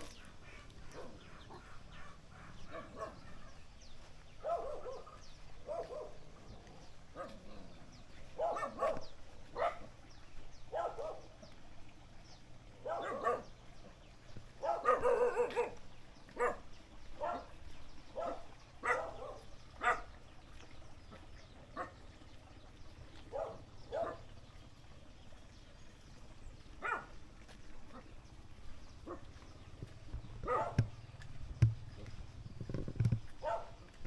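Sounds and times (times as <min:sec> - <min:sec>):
dogs barking: 0:00.0 - 0:10.0, 0:10.6 - 0:11.5, 0:12.7 - 0:20.3, 0:21.1 - 0:22.1, 0:23.2 - 0:24.5, 0:26.6 - 0:32.2, 0:33.3 - 0:34.0.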